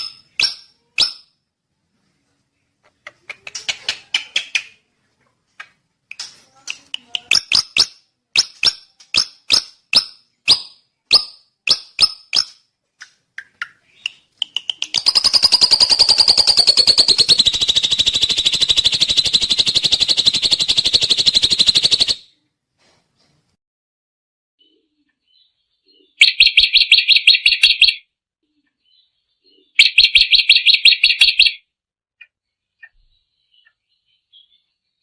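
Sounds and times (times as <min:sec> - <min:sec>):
bird clicking calls: 0:02.8 - 0:04.8, 0:05.6 - 0:22.2, 0:26.2 - 0:28.0, 0:29.8 - 0:31.6
bird rattling trill: 0:14.4 - 0:22.2, 0:26.2 - 0:28.0, 0:29.8 - 0:31.6.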